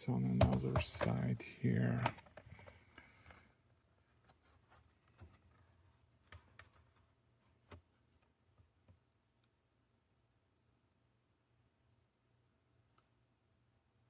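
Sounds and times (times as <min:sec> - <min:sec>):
clicks on plastic case: 0:00.2 - 0:02.6.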